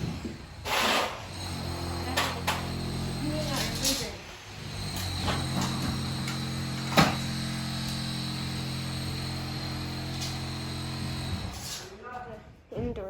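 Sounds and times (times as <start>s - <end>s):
machine electrical hum: 1.3s - 11.6s.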